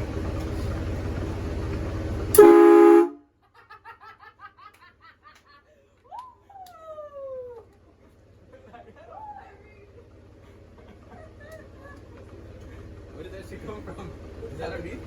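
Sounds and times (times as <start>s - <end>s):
engine running: 0.0s - 3.2s, 7.7s - 15.0s
train horn blast: 2.3s - 3.3s.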